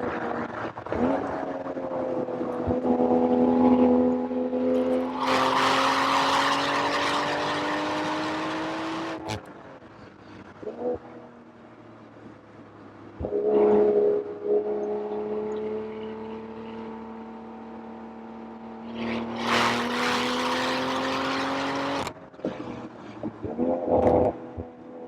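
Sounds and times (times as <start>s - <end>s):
car engine pulling hard: 2.9s - 10.5s, 18.5s - 24.2s.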